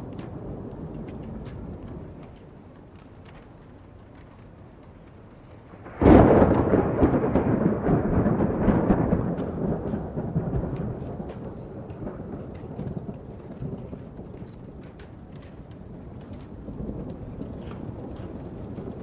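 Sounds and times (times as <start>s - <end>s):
deep rolling thunder: 0.0s - 4.2s, 5.6s - 19.0s
hail ticking: 0.0s - 19.0s
sharp thunderclap: 5.7s - 14.8s.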